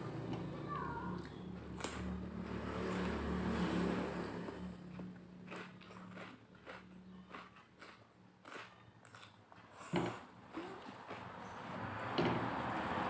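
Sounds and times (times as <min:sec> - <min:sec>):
vehicle engine hum: 0:00.0 - 0:05.5, 0:10.4 - 0:13.0
chewing clicks and crunches: 0:04.9 - 0:09.9.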